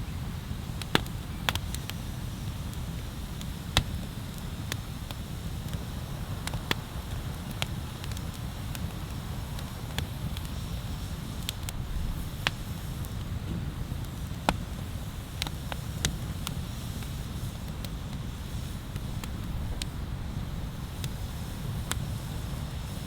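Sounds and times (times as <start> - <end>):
bonfire crackling and popping: 0.1 - 23.0.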